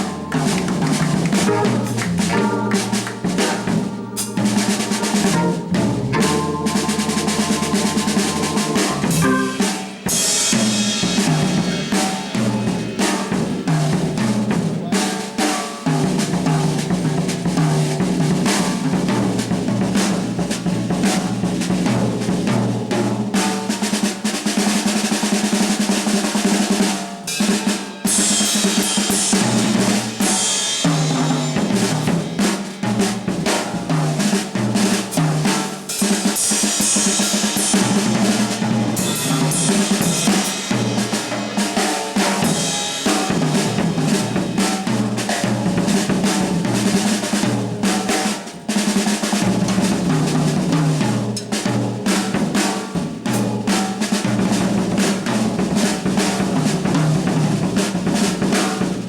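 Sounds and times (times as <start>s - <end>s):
sustained organ notes: 0.0s - 10.0s
cymbal wash: 0.0s - 13.9s, 34.7s - 45.7s
jazz drum kit: 0.0s - 59.0s.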